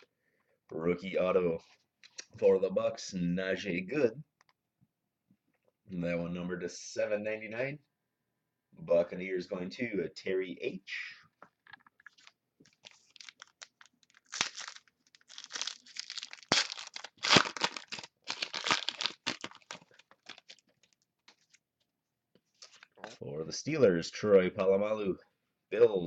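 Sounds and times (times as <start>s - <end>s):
plastic wrapper tearing and crinkling: 11.9s - 21.6s.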